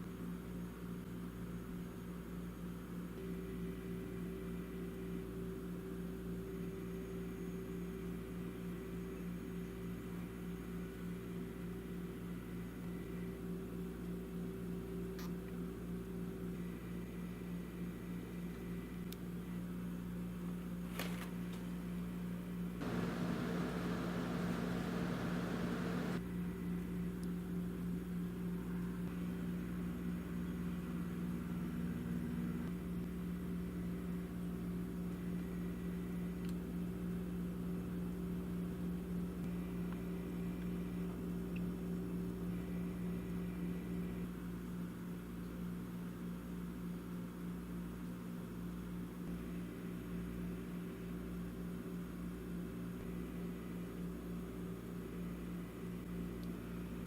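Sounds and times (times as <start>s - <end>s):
steady mechanical hum: 0.0s - 57.0s
steady low hum: 22.8s - 26.2s.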